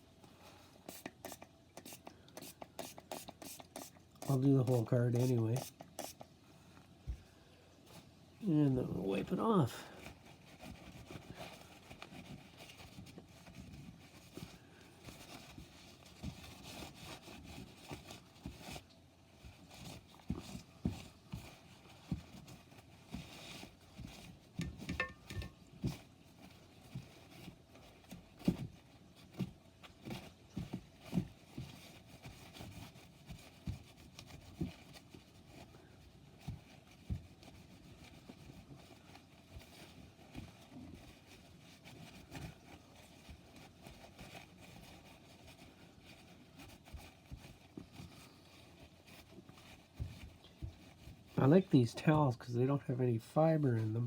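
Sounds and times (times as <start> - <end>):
towel rubbing on circuit board: 0.8 - 6.2
light knocks and taps: 24.6 - 26.0.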